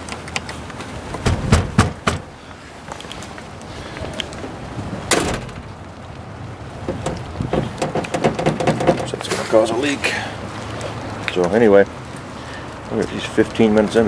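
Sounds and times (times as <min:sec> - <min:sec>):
car trunk lid clunk: 0:01.2 - 0:02.3
car trunk lid knocks and clicks: 0:01.2 - 0:02.3, 0:06.9 - 0:09.1.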